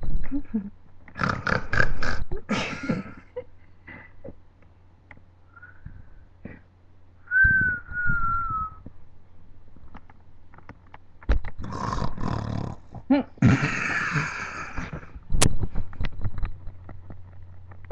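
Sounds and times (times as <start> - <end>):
rasping snores: 11.6 - 14.2.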